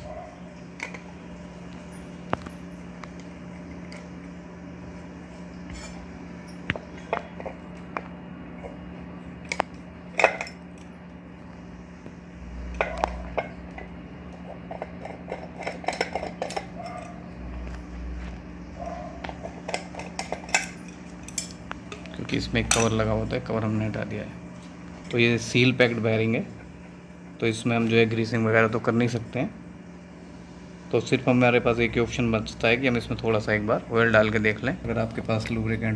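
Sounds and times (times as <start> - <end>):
faint steady hum: 0.0 - 35.9
metal tools clinking and scraping: 14.7 - 17.9, 19.4 - 23.4.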